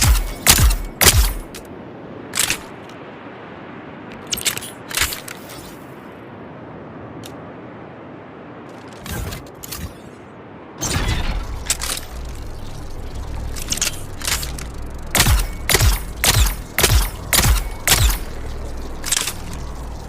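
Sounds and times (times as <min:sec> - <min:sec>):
steady hiss: 0:10.8 - 0:20.0.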